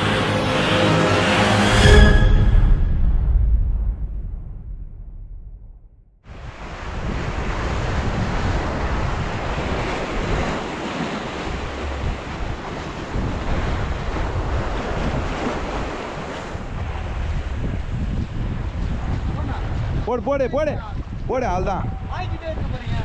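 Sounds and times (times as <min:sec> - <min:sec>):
surf washing onto beach: 0:06.3 - 0:19.9
wind buffeting microphone: 0:06.3 - 0:23.0.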